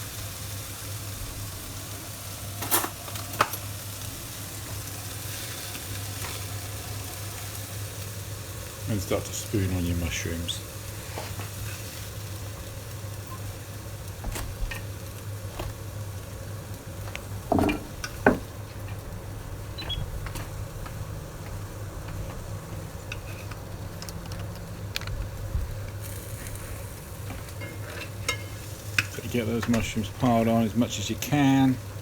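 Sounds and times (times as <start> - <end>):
metal spoon scraping a pan: 27.6 - 28.7.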